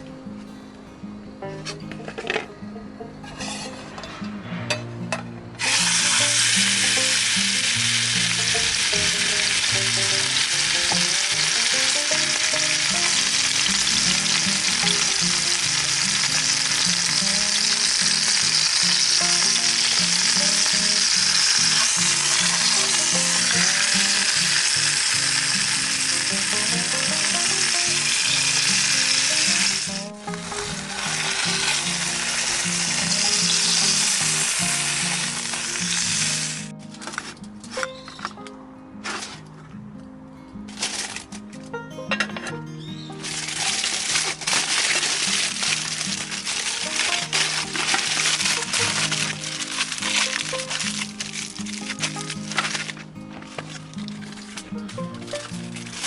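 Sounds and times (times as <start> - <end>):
food frying sizzle: 5.6 - 36.7, 43.0 - 54.6.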